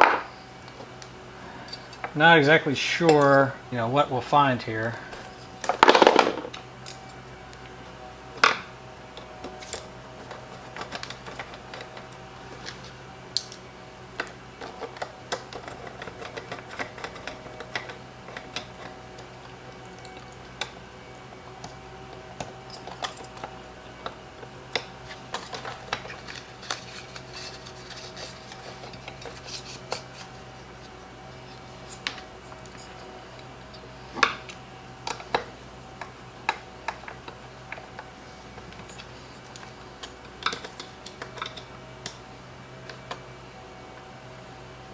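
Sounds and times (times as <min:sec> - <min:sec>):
hand tools clinking: 0:00.0 - 0:03.5, 0:09.2 - 0:42.2
small parts clicking and tapping: 0:14.2 - 0:42.2.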